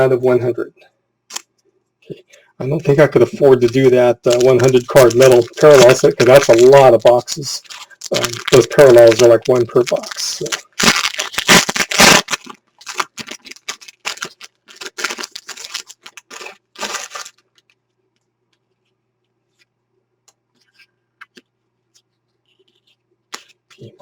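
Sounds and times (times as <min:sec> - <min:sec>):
trading cards rustling and clicking: 0:02.9 - 0:17.8, 0:20.6 - 0:23.9.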